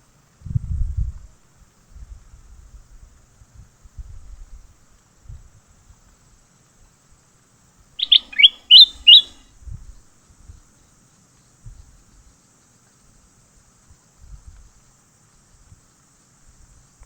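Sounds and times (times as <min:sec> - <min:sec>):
bird chirping: 0:08.0 - 0:09.4.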